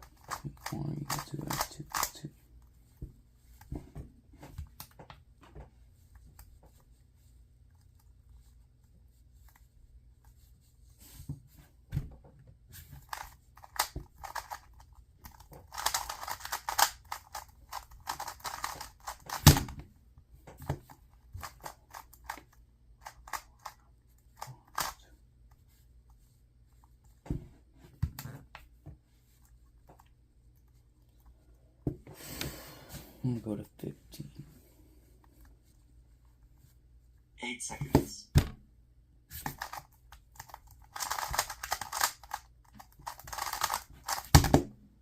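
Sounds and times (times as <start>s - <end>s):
plastic puzzle cube clicking: 0.1s - 2.2s, 13.1s - 19.7s, 39.5s - 44.6s.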